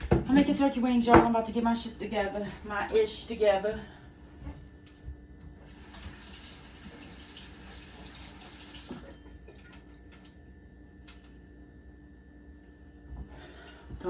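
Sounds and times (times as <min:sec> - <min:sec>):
water running from tap: 0:05.6 - 0:09.2.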